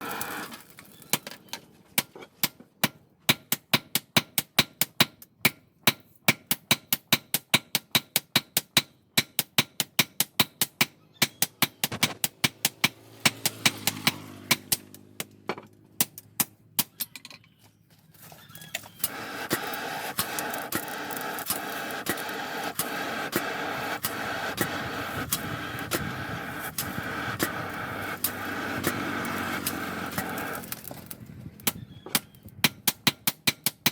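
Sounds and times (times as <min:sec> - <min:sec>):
motorised tool running: 0:00.0 - 0:01.0, 0:11.8 - 0:15.0, 0:18.8 - 0:31.6
hammer striking steel: 0:02.4 - 0:15.3.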